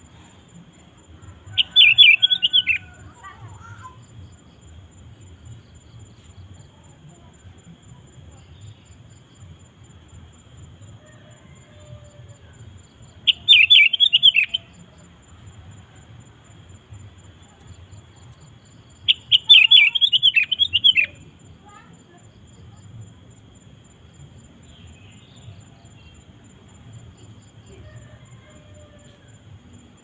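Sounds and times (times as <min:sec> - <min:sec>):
bulbul singing: 0:01.4 - 0:03.0, 0:13.1 - 0:14.8, 0:18.9 - 0:21.9.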